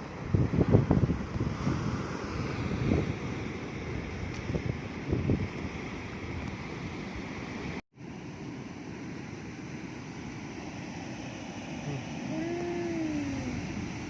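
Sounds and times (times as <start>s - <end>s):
wind on microphone: 0.0s - 7.8s, 11.9s - 14.0s
sea surf: 0.0s - 14.0s.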